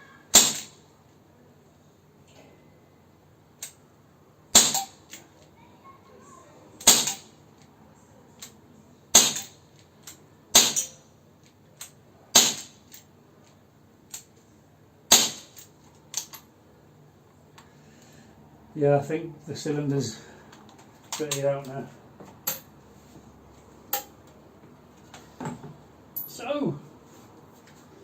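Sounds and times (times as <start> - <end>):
air pistol shots cracking: 0.3 - 0.8, 4.5 - 5.2, 6.8 - 7.3, 9.1 - 9.6, 10.5 - 11.0, 12.3 - 12.8, 15.1 - 15.6.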